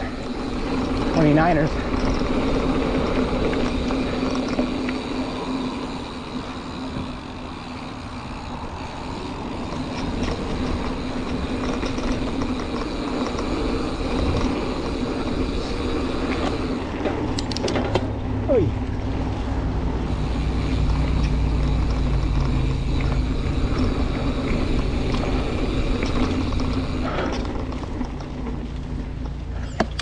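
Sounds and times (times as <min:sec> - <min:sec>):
bike tyres rumbling on dirt: 0:00.0 - 0:30.0
steady buzzing tone: 0:19.8 - 0:27.2.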